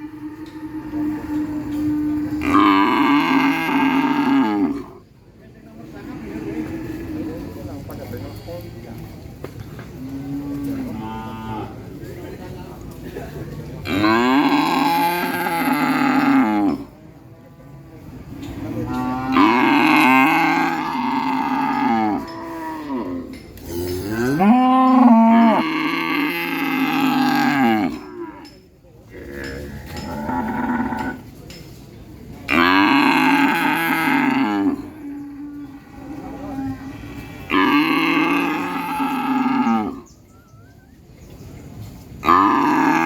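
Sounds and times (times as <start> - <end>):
cattle mooing: 0.0 - 4.9, 13.9 - 16.9, 18.4 - 28.5, 32.5 - 40.1, 42.2 - 43.0.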